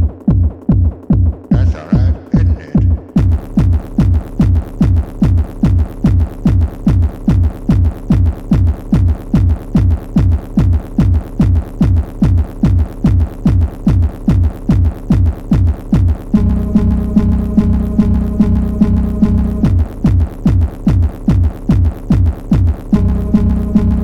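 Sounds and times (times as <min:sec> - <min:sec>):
synthesized kick drum: 0:00.0 - 0:24.0
low bass drone: 0:16.3 - 0:20.9, 0:22.8 - 0:24.0.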